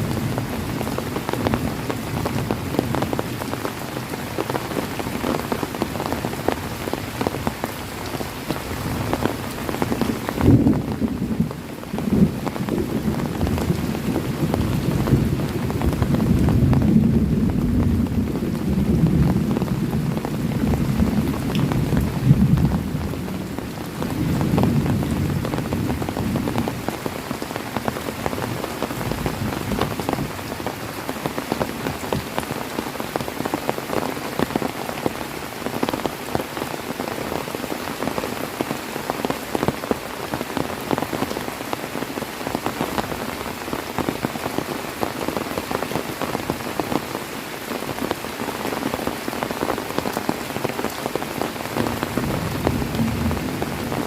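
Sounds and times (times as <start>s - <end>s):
heavy rain falling: 0.0s - 54.0s
low rumble of thunder: 10.0s - 26.9s, 51.8s - 54.0s.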